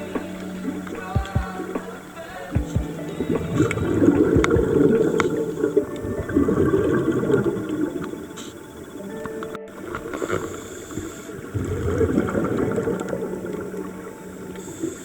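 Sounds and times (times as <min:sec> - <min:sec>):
diver's bubbles gurgling underwater: 0:02.8 - 0:08.3.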